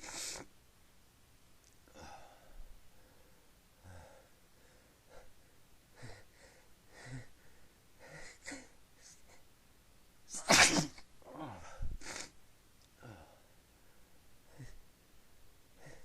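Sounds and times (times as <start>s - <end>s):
person sneezing: 10.3s - 12.4s.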